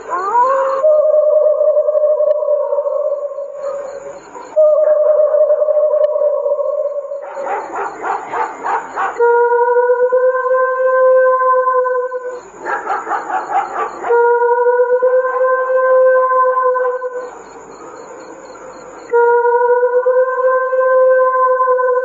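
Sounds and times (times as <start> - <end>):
eerie high wailing cry: 0.0 - 17.5
stuttering laugh-like yelps: 7.4 - 9.2, 12.6 - 14.2.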